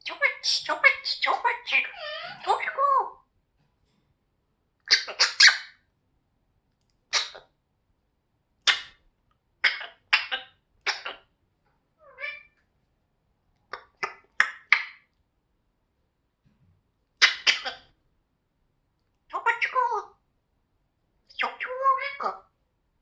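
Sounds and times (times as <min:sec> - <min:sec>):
parrot squeak: 0:00.0 - 0:03.2, 0:04.9 - 0:05.8, 0:07.1 - 0:07.4, 0:09.6 - 0:11.3, 0:12.0 - 0:12.6, 0:13.7 - 0:15.0, 0:17.2 - 0:17.9, 0:19.3 - 0:20.1, 0:21.3 - 0:22.5
parrot coughing: 0:04.9 - 0:05.7, 0:07.1 - 0:07.4, 0:09.6 - 0:11.3, 0:17.2 - 0:17.9.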